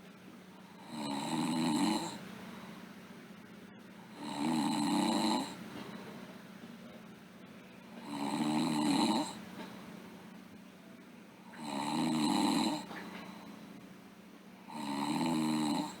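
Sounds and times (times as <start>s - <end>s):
girl snoring: 0.7s - 2.2s, 4.1s - 5.6s, 8.0s - 9.4s, 11.5s - 13.0s, 14.7s - 16.0s.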